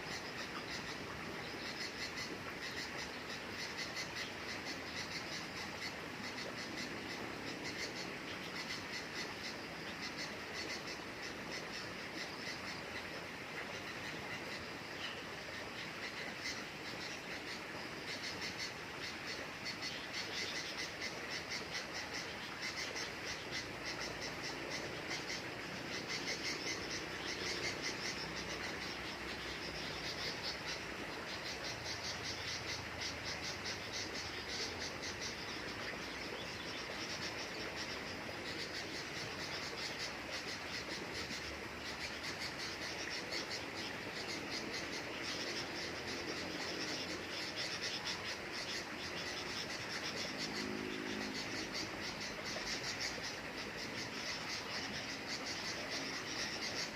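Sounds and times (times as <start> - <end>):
insects chirping: 0.0 - 56.9.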